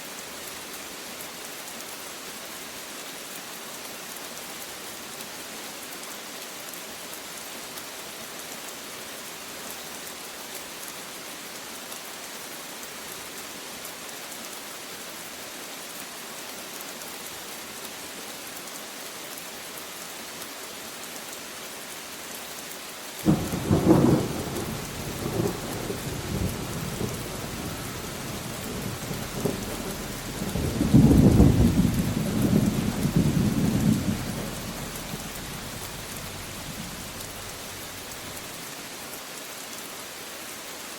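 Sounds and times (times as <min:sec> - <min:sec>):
steady rain: 0:00.0 - 0:40.9
thunder rumbling: 0:23.3 - 0:38.4.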